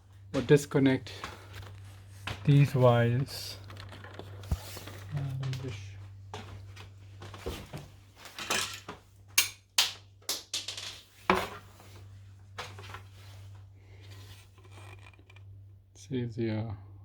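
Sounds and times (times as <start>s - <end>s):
steady low hum: 0.0s - 10.3s, 11.1s - 17.0s
plastic covers clicking and clattering: 8.3s - 11.5s.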